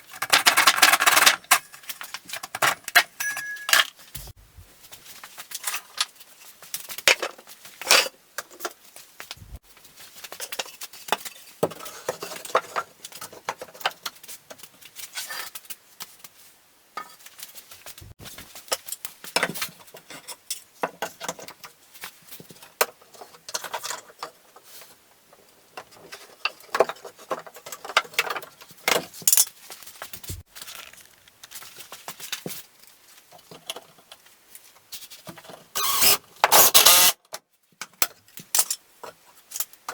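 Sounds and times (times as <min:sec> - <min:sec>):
tools clattering at workbench: 0:00.1 - 0:04.4.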